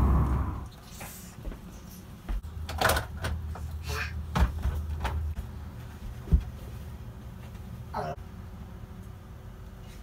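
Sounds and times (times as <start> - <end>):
low hum: 0.0 - 0.8.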